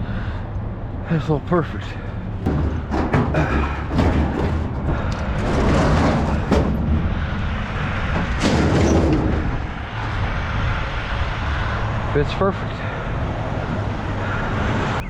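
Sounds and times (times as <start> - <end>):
steady low rumble: 0.0 - 15.0
heavy knocks: 2.2 - 10.0
scrap metal being shoved: 2.4 - 9.7.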